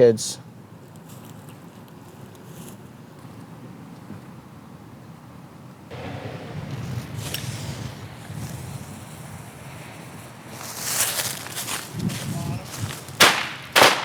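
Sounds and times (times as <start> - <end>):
firework hissing fizz: 5.9 - 11.6
firework bangs: 5.9 - 11.8, 13.1 - 14.0.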